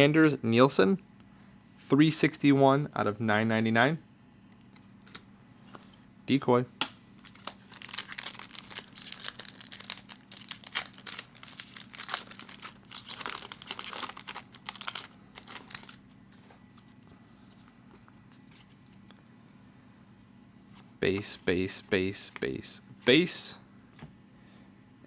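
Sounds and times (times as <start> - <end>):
faint steady hum: 0.0 - 25.0
foil wrapper tearing and crinkling: 7.2 - 16.0.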